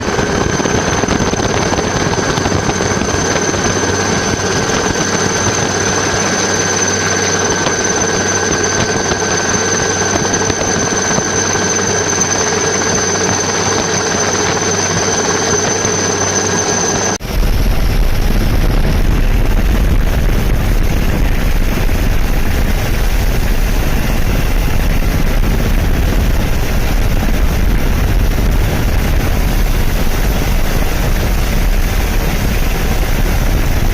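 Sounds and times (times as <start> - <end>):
helicopter engine and rotor drone: 0.0 - 33.9
high whine: 0.0 - 33.9.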